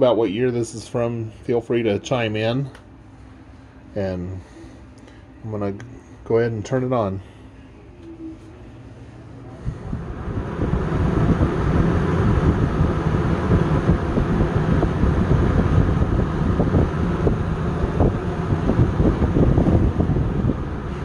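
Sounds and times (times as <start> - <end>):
box fan running: 0.0 - 21.0
air buffeting microphone: 7.1 - 21.0.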